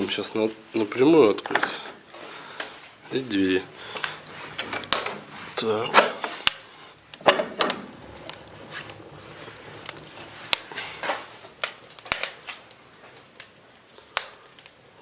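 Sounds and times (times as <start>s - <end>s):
metal scrape: 3.4s - 12.2s.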